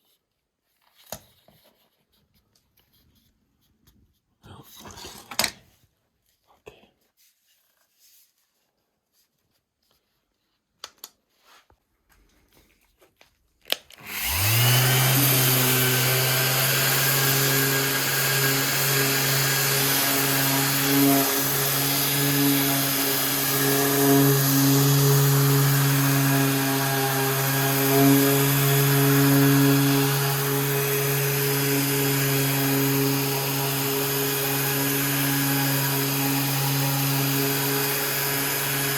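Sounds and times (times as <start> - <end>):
power tool motor spinning: 13.9 - 38.9.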